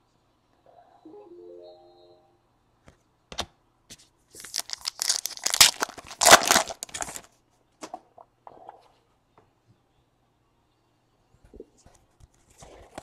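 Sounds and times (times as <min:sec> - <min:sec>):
wrapper tearing and crinkling: 0:04.4 - 0:07.3.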